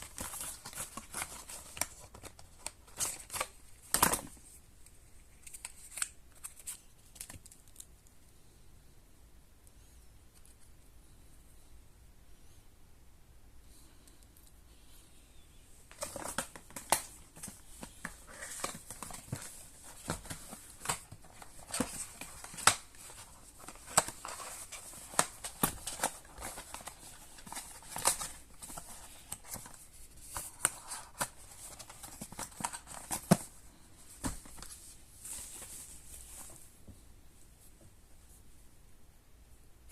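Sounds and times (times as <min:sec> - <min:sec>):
packaging rustling: 0:00.0 - 0:04.5, 0:15.9 - 0:36.6.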